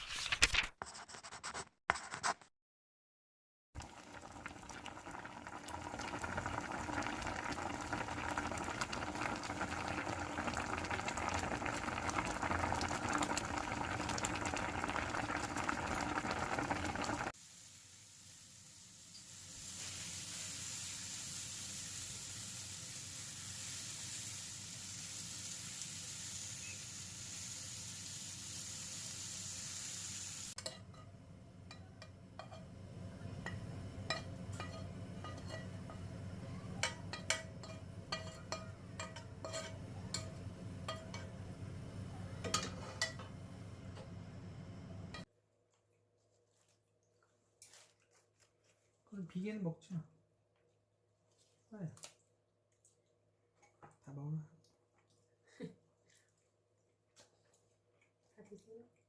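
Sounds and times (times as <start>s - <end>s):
food bubbling and crackling: 3.8s - 17.4s, 50.6s - 59.0s
high sizzle: 3.8s - 45.3s.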